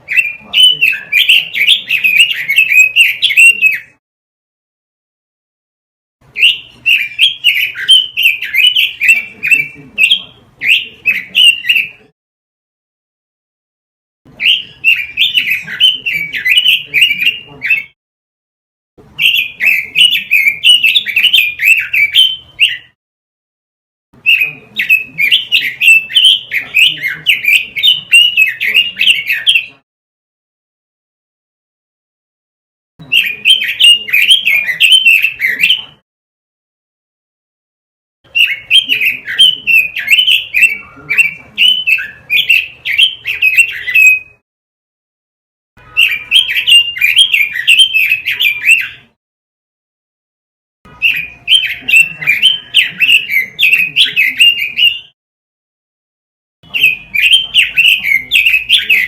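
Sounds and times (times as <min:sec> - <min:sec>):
bird warbling song: 0:00.0 - 0:04.0, 0:06.3 - 0:12.1, 0:14.3 - 0:18.0, 0:19.1 - 0:23.0, 0:24.2 - 0:29.8, 0:33.0 - 0:36.0, 0:38.3 - 0:44.4, 0:45.8 - 0:49.2, 0:50.9 - 0:55.2, 0:56.7 - 0:59.0.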